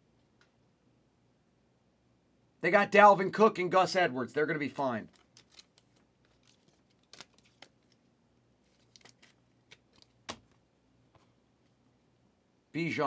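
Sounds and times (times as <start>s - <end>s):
trading cards clicking and rustling: 5.1s - 8.0s, 8.7s - 10.6s.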